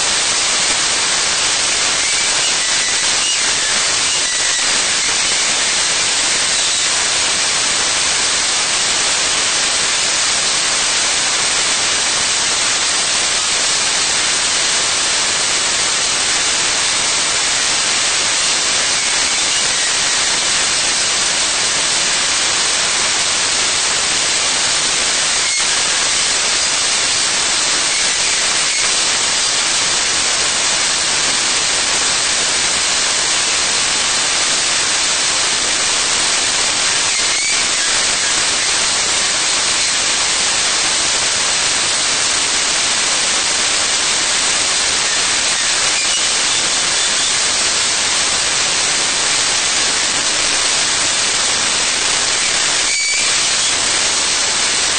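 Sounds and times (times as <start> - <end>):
loud static hiss: 0.0 - 54.9.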